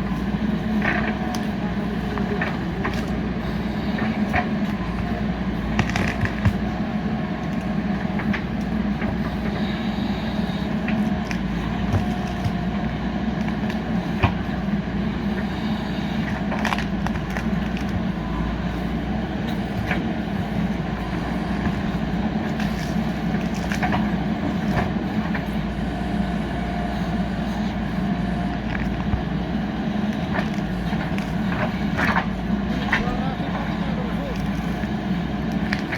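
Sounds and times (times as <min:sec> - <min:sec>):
diesel engine running: 0:00.0 - 0:35.9.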